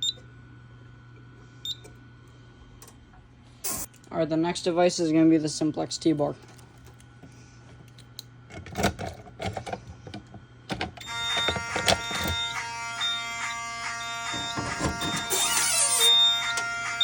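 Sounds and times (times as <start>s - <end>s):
pull station clicks and clunks: 8.5s - 12.4s
fire alarm horns blaring: 11.0s - 17.0s
high beeps: 11.0s - 17.0s.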